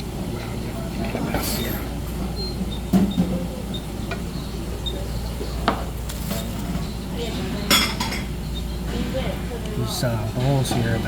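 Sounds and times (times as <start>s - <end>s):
restaurant background noise: 0.0s - 11.0s
tableware clinking on table: 7.7s - 8.3s.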